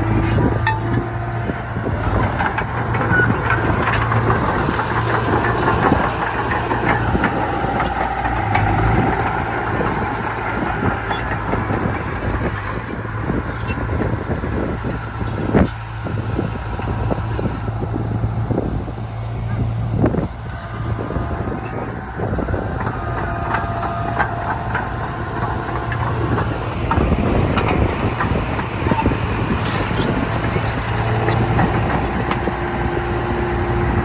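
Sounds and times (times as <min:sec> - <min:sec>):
diesel engine drone: 0:00.0 - 0:34.0
small metallic clanks: 0:00.2 - 0:01.1.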